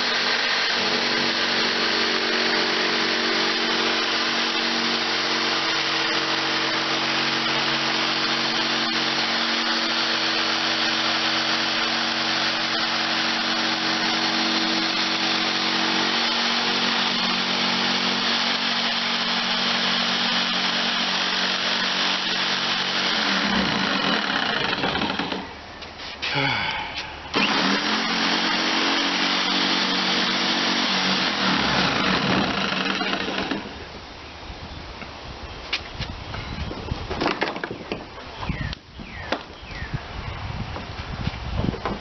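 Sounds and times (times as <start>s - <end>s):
harsh grinding: 0.0s - 25.6s, 27.3s - 33.9s
power tool whirring: 0.0s - 25.6s, 27.1s - 33.9s.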